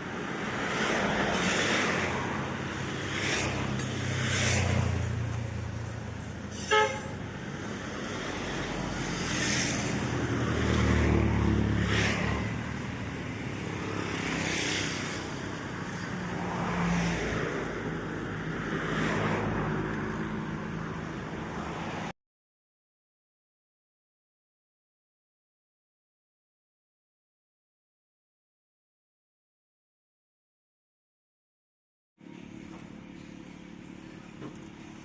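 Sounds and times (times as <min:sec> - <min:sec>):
road traffic passing: 0:00.0 - 0:22.2, 0:32.2 - 0:35.0
car horn toot: 0:06.5 - 0:07.2.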